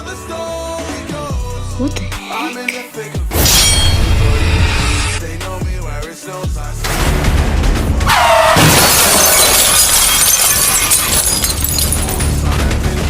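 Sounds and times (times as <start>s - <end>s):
bass-heavy music: 0.0s - 13.0s
glass shattering crash: 3.3s - 5.2s, 8.1s - 12.6s.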